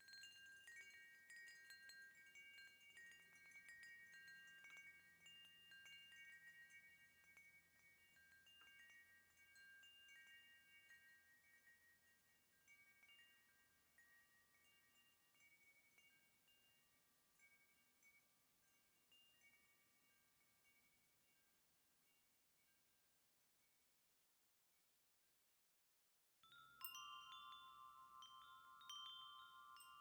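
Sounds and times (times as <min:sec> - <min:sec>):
metal wind chime ringing: 0:00.0 - 0:11.8, 0:26.4 - 0:30.0.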